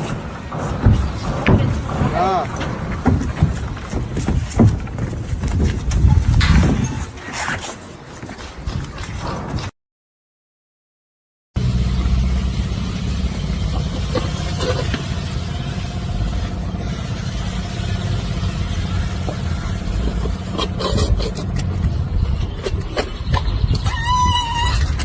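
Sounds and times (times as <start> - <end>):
sharp knocks: 0.0 - 6.8
vehicle engine running: 11.6 - 23.2.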